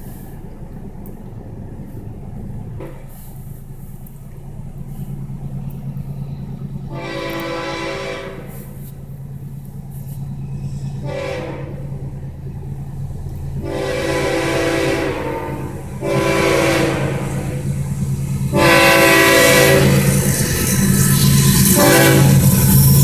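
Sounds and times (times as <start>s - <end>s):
locomotive engines rumbling: 0.0s - 23.0s
train horn blasts: 6.8s - 9.0s, 10.8s - 12.1s, 13.6s - 23.0s.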